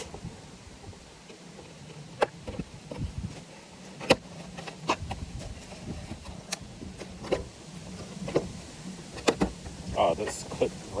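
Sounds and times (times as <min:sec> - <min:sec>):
sharp clicks and knocks: 0:01.2 - 0:08.6.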